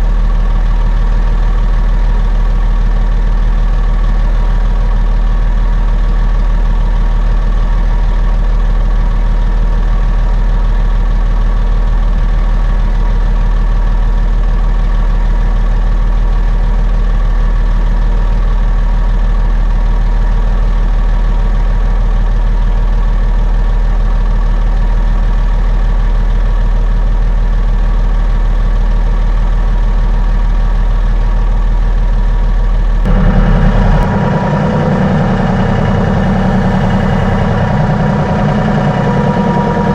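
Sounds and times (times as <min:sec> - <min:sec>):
truck engine droning: 0:30.8 - 0:39.9.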